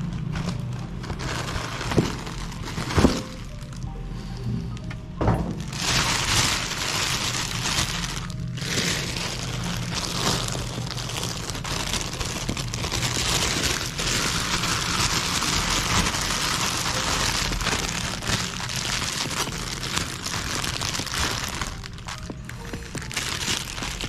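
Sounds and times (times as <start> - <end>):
low motor hum: 0.0 - 24.0
meat grinder crunching: 5.7 - 24.0.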